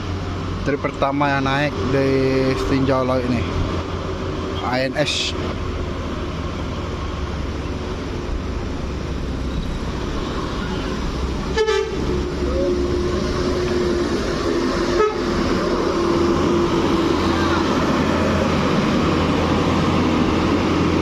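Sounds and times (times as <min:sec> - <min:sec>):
bus engine rumble: 0:00.0 - 0:21.0
bus horn long note: 0:11.5 - 0:14.1, 0:14.8 - 0:15.5.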